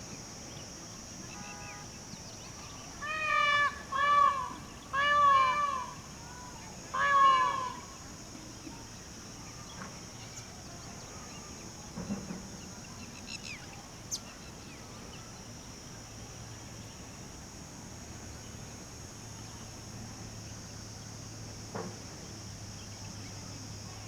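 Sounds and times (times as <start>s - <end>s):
high-pitched insect drone: 0.0s - 21.7s
low fowl-like call: 3.0s - 6.0s, 6.9s - 8.0s.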